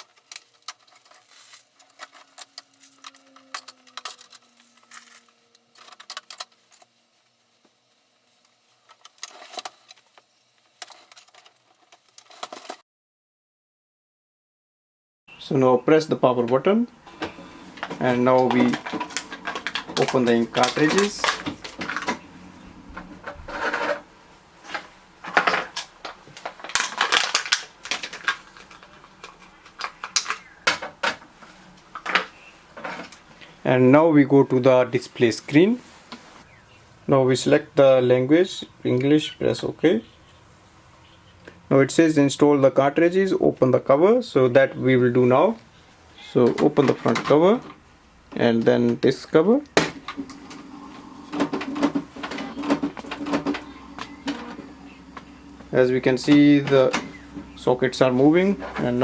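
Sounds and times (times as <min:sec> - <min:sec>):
packaging crackling and clicking: 0:00.0 - 0:07.0, 0:08.4 - 0:12.8, 0:17.8 - 0:22.2, 0:24.7 - 0:33.2.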